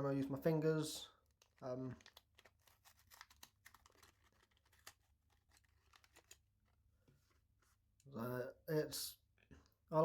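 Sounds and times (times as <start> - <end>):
plastic blister pack crinkling: 1.2 - 6.8.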